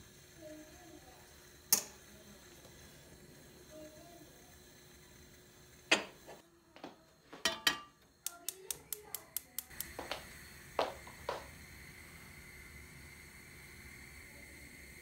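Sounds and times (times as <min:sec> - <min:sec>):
steady hiss: 0:00.0 - 0:06.7, 0:08.1 - 0:15.0
kitchen knocks and clatters: 0:05.9 - 0:06.4, 0:07.3 - 0:08.1.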